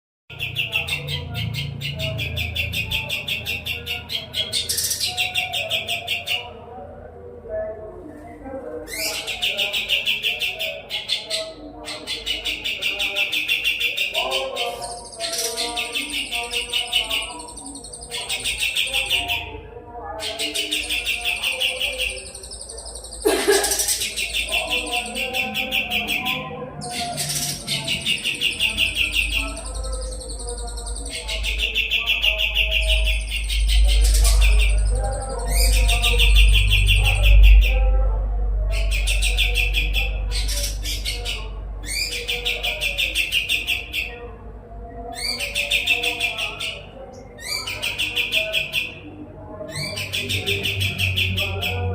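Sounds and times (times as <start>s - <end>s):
songbird trilling: 8.9s - 19.5s, 20.2s - 37.8s.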